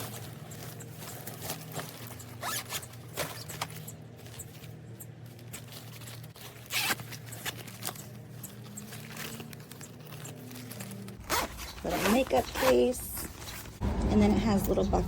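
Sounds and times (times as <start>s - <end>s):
suitcase zipper rasping: 2.4s - 3.5s, 6.6s - 7.3s, 10.2s - 13.0s.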